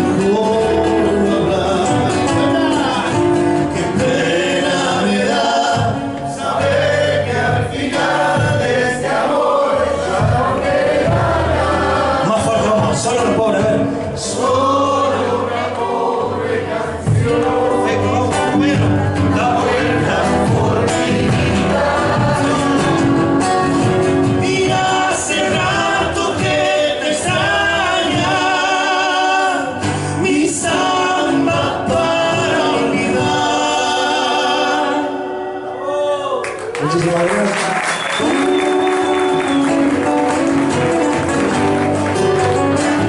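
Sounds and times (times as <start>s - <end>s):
instrumental accompaniment: 0.0s - 29.0s, 38.2s - 43.0s
voices singing together: 0.0s - 36.4s.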